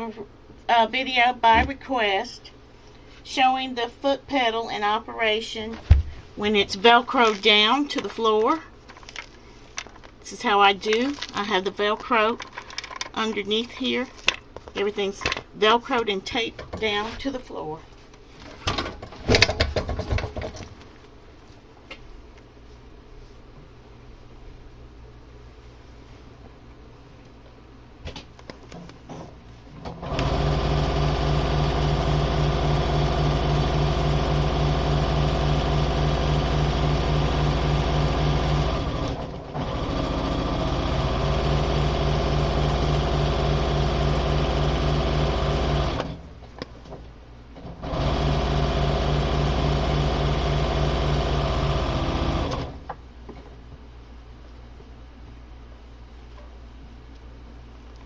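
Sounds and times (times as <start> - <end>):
sewing machine running: 29.9 - 46.2, 47.8 - 52.8.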